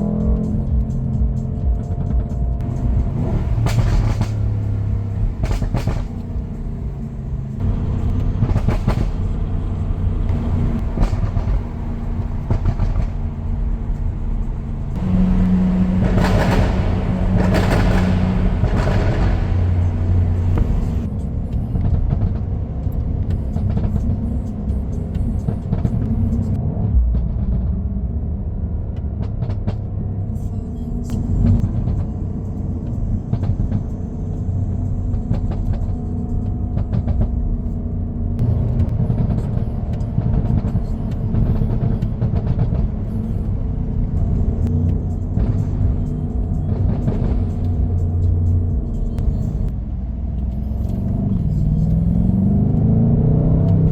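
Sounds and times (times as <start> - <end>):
car exhaust deep drone: 0.0 - 53.9
exhaust pops: 1.7 - 24.4.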